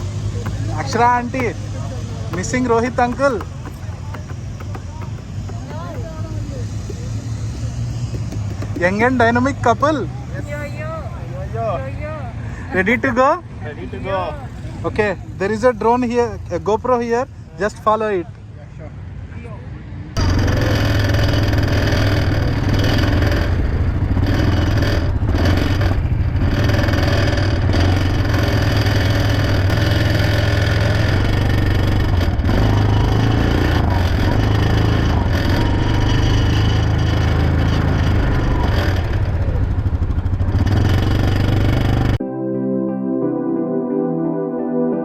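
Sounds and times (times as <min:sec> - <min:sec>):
atv engine running: 0:00.0 - 0:11.8, 0:20.2 - 0:42.2.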